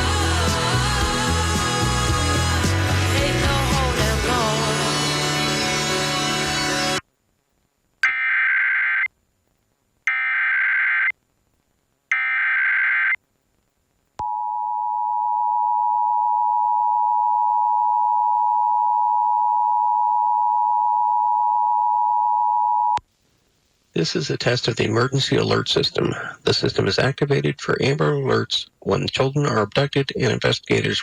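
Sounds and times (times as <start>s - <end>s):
music: 0.0s - 7.0s.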